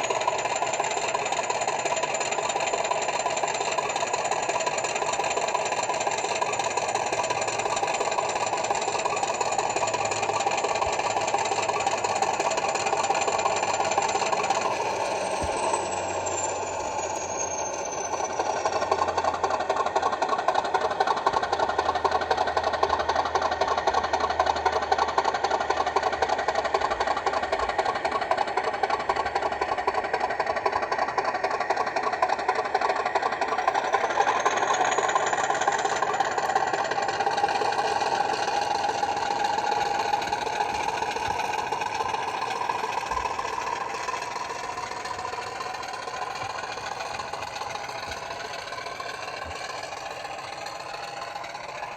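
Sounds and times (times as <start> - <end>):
diesel engine through small speaker: 0.0 - 51.9
high whistle: 13.0 - 19.4.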